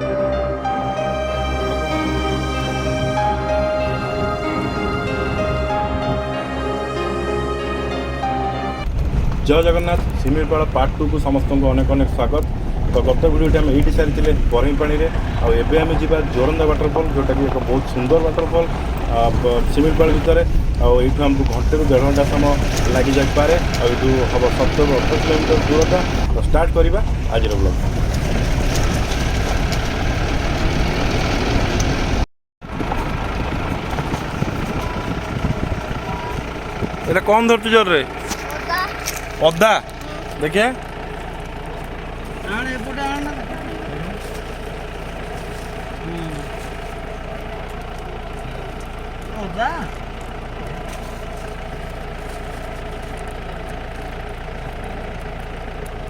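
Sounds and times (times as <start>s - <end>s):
rumbling road noise: 0.0s - 56.0s
vehicle engine running: 0.0s - 56.0s.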